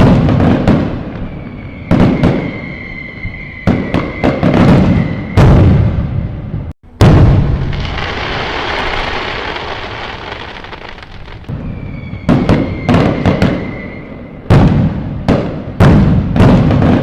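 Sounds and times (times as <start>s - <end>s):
fireworks crackling and fizzing: 0.0s - 5.8s, 6.9s - 17.0s
firework whistling tone: 0.0s - 6.3s, 7.3s - 14.8s
fireworks bangs: 0.0s - 17.0s.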